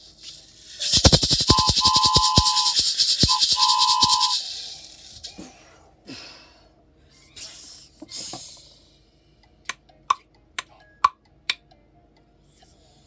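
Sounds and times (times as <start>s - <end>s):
hissing rattling bursts: 0.0s - 5.4s
sharp clicks: 0.6s - 4.7s.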